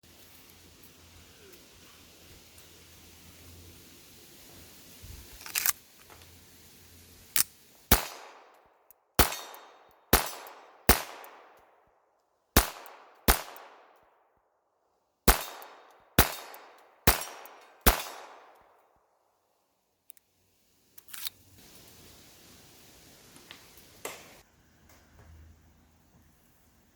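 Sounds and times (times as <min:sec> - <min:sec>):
sharp pistol clicks: 0:07.4 - 0:11.8, 0:12.6 - 0:14.2, 0:15.3 - 0:18.8
pistol shots echoing: 0:07.9 - 0:08.6, 0:09.2 - 0:11.8, 0:12.6 - 0:14.2, 0:15.3 - 0:18.8.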